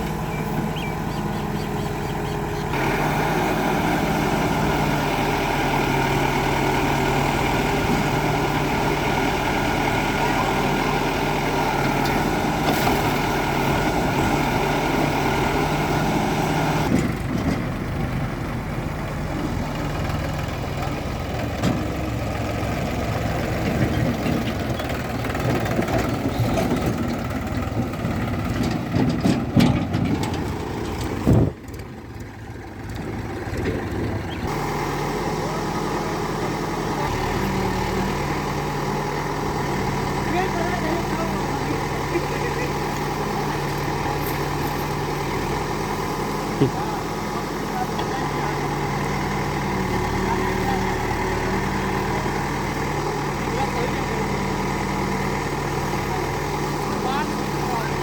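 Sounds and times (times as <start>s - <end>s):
diesel engine under load: 0.0s - 58.0s
knocks and clatter: 23.6s - 31.9s.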